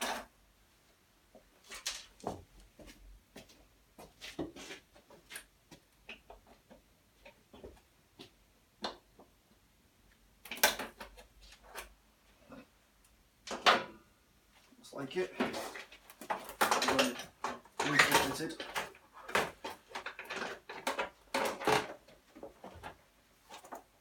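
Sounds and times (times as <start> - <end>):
tools clattering: 15.2 - 22.0
tools clicking and knocking: 15.4 - 23.0.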